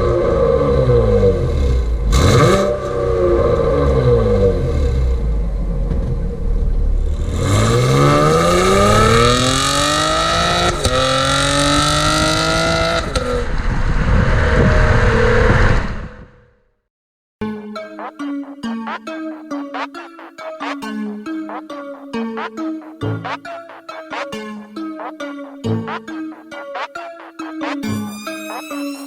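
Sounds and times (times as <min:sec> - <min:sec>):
car exhaust revving: 0:00.0 - 0:16.1.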